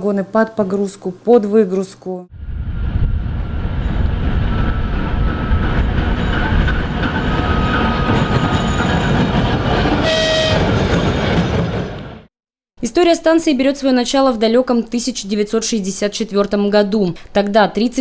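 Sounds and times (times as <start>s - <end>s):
train wheels rumbling on rails: 2.5s - 12.3s.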